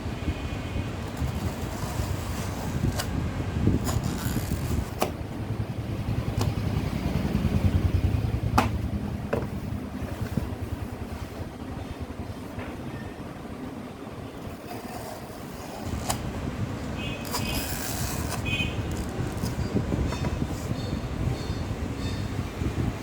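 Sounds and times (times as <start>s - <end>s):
motor pulsing rumble: 0.9s - 12.5s.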